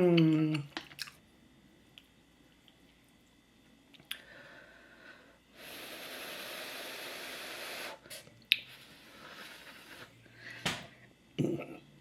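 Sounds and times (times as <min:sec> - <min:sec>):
person blowing on food: 0:05.5 - 0:08.2.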